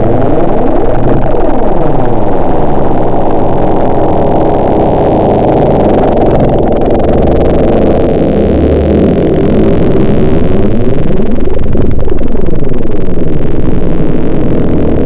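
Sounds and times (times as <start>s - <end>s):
muffled chainsaw engine running: 0.0s - 12.0s.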